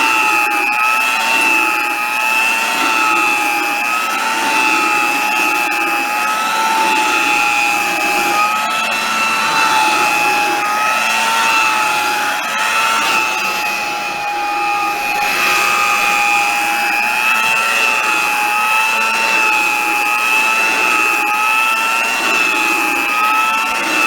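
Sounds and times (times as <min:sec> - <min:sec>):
hand vacuum cleaner whining: 0:00.0 - 0:24.0.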